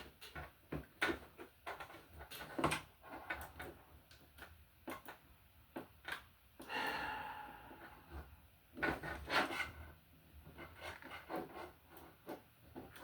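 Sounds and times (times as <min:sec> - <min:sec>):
clicks and knocks of handling cables: 0:00.0 - 0:06.7, 0:10.4 - 0:13.0.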